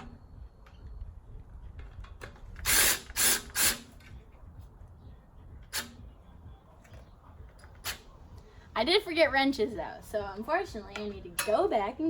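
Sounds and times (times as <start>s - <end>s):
cordless ratchet running: 2.6s - 3.9s.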